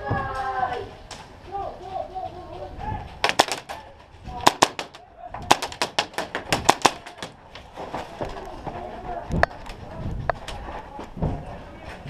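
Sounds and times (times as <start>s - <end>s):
airsoft guns firing: 3.2s - 3.8s, 4.4s - 7.4s.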